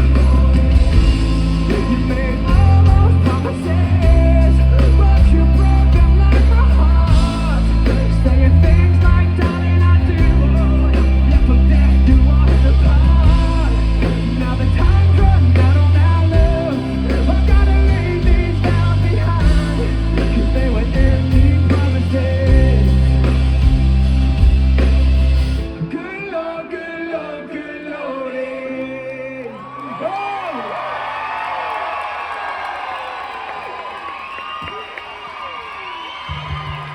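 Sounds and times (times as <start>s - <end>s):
person singing: 0.0s - 24.0s, 25.7s - 30.6s
live rock band playing: 0.0s - 26.0s
crowd cheering and whooping: 29.4s - 36.9s.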